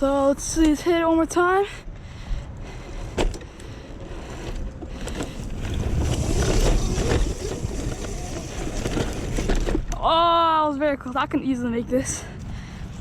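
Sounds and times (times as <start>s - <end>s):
wind buffeting microphone: 1.8s - 9.6s
tyres churning through leaves: 5.4s - 9.5s.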